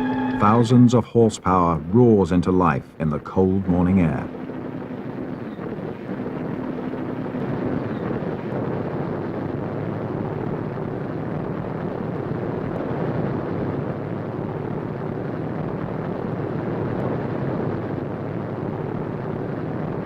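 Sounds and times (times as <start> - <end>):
radial piston engines droning: 0.0 - 8.6.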